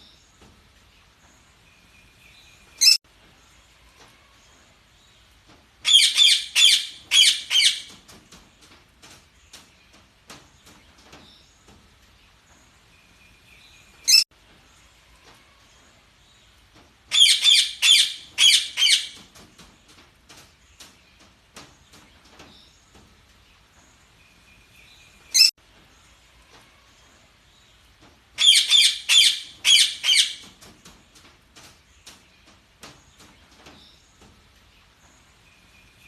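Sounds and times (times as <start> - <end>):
parakeets chirping: 2.8 - 3.0, 5.8 - 7.9, 17.1 - 19.2, 28.4 - 30.4.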